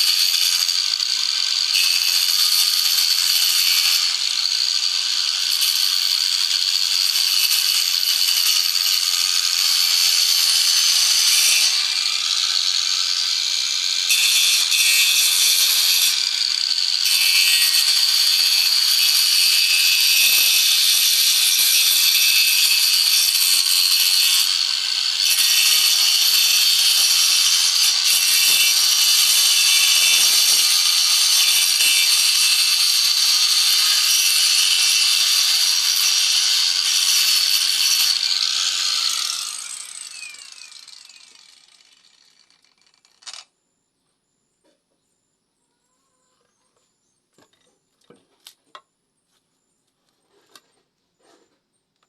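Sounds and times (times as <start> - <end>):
tool scraping wood: 46.8 - 51.8.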